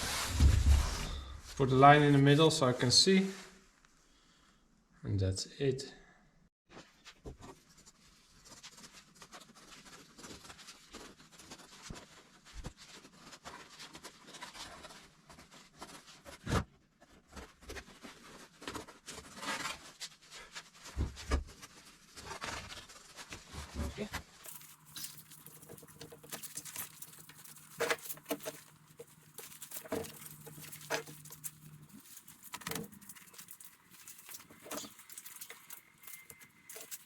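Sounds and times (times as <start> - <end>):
fabric scratching and rustling: 0.0 - 1.3, 17.4 - 37.0.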